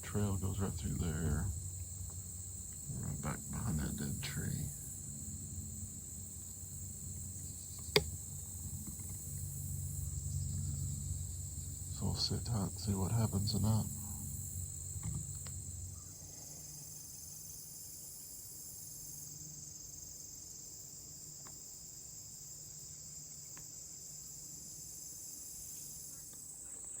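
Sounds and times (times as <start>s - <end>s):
crickets chirping: 0.0s - 27.0s
faint ticks: 1.4s - 16.8s, 21.4s - 21.6s, 23.4s - 23.9s.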